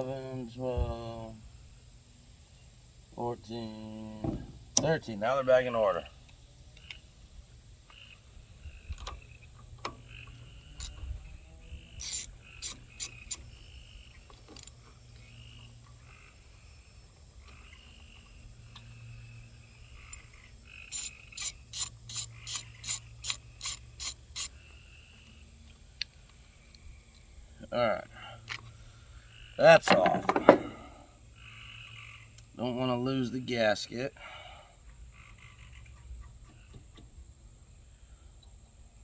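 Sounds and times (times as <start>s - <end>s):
ratchet wrench clicking: 10.8s - 11.0s, 12.0s - 13.6s, 20.0s - 24.6s.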